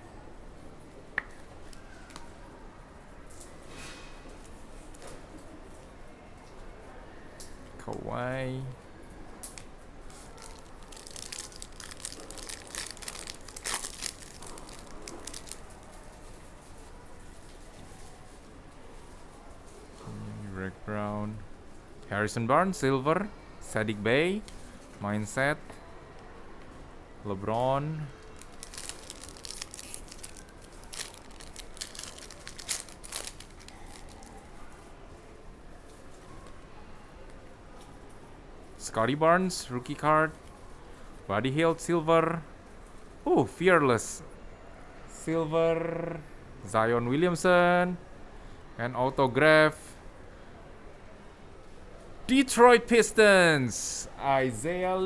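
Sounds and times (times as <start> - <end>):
trading cards rustling and snapping: 10.3 - 15.6, 28.2 - 34.4.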